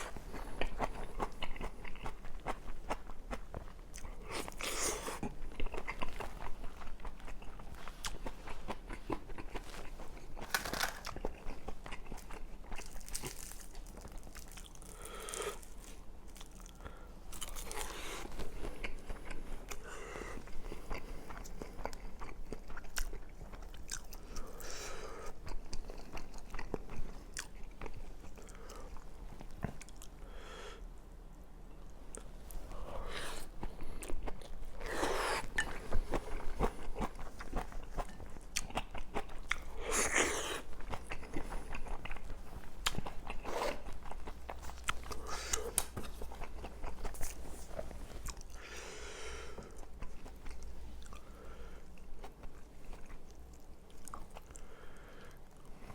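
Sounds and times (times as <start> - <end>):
chewing and biting food: 0.0 - 24.6, 25.2 - 30.2, 32.2 - 48.7, 49.6 - 54.6.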